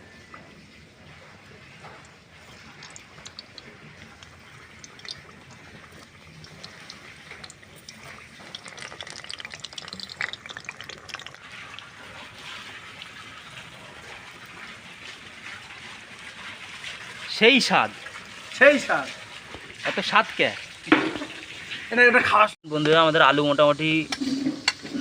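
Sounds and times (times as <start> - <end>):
oil crackling: 1.8 - 17.7.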